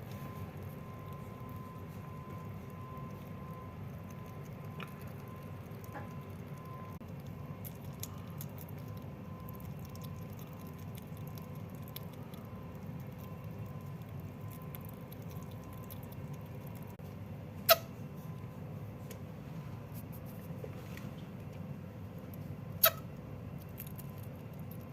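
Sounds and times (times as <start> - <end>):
steady low hum: 0.0 - 24.9
wet chewing clicks: 0.2 - 17.0, 22.3 - 24.9.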